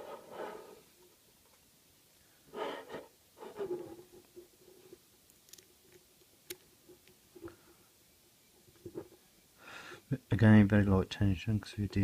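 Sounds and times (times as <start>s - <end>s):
small metal clicks: 5.3s - 7.2s.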